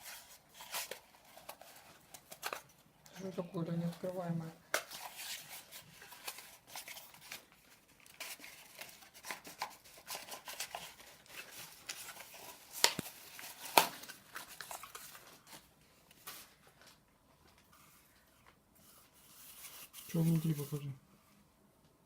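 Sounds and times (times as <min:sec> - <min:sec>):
plastic packaging crinkling: 0:03.9 - 0:17.6.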